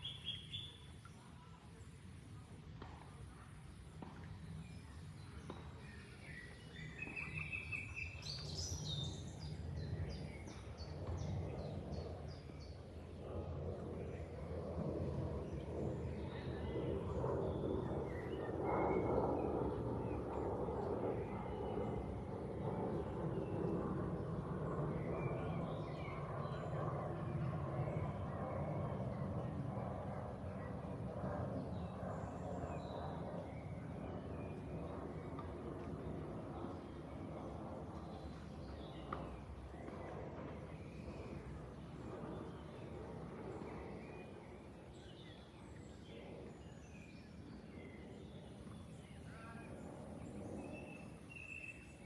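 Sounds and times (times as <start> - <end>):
songbirds singing: 0.0 - 1.2, 3.6 - 13.2, 23.0 - 29.6, 30.3 - 52.0.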